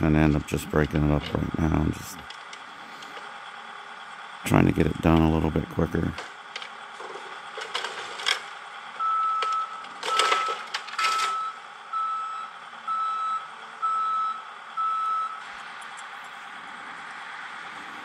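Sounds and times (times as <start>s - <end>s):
demolition debris knocking and crunching: 6.1s - 8.5s, 9.3s - 11.3s
excavator backup alarm beeping: 8.9s - 15.4s.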